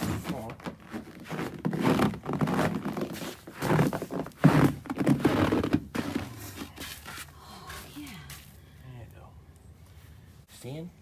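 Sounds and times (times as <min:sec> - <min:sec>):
fabric rustling and crinkling: 0:00.0 - 0:08.2.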